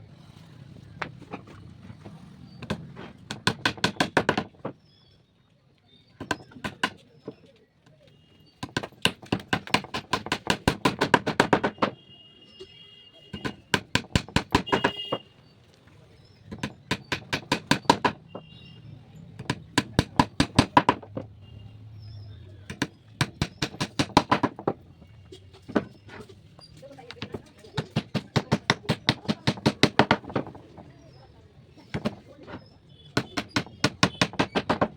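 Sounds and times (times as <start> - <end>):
hammer tapping on wood: 2.6 - 4.8, 8.6 - 12.0, 13.4 - 15.2, 16.5 - 18.4, 19.4 - 21.3, 22.7 - 24.8, 27.2 - 30.6, 33.2 - 34.9.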